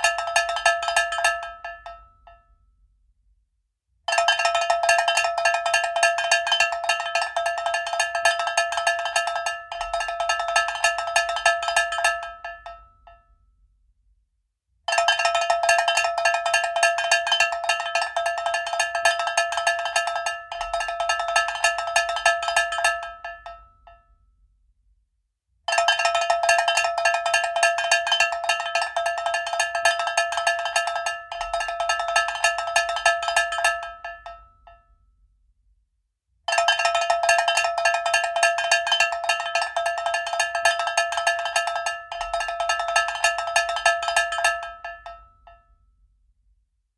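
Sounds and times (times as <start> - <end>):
cowbell clanging: 0.0 - 2.1, 4.1 - 12.8, 14.9 - 23.6, 25.7 - 34.5, 36.5 - 45.3.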